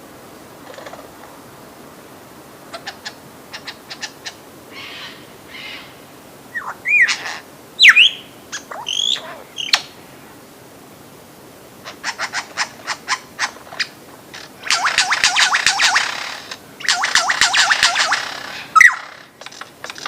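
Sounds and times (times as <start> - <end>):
lyrebird clicks and whistles: 14.7 - 20.0.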